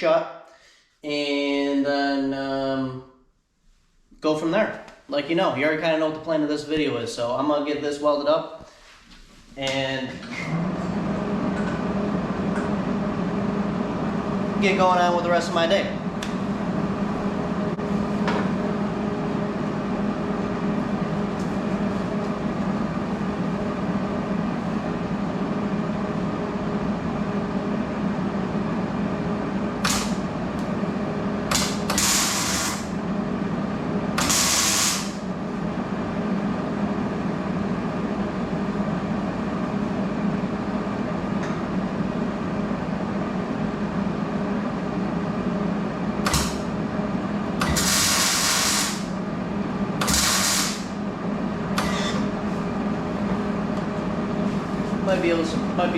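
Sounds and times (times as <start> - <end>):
welder humming: 51.7 - 52.6.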